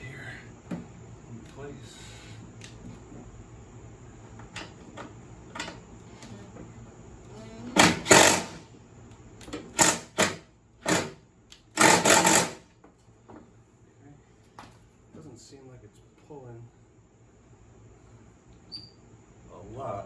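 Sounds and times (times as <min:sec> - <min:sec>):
cordless power driver bursts: 0:07.8 - 0:08.6, 0:09.7 - 0:12.6.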